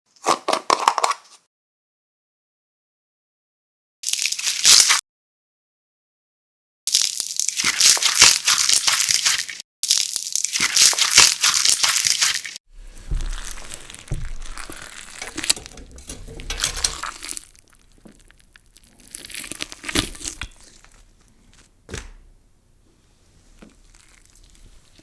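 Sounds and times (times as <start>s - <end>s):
low thumps: 12.8s - 17.4s
slime crackling and popping: 17.3s - 21.3s.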